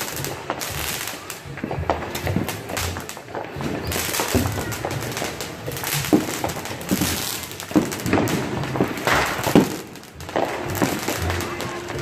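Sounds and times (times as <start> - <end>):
music playing: 0.0 - 12.0
sharp cracks and thuds: 6.0 - 11.3.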